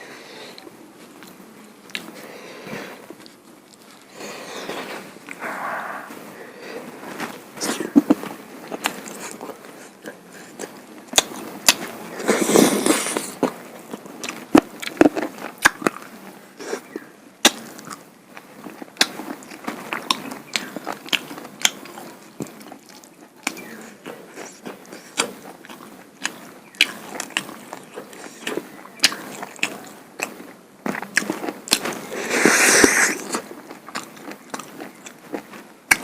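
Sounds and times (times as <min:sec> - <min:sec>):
louder eating noise: 0:00.0 - 0:36.0
chewing with lip smacks: 0:06.8 - 0:36.0
mouth clicks: 0:25.0 - 0:35.2.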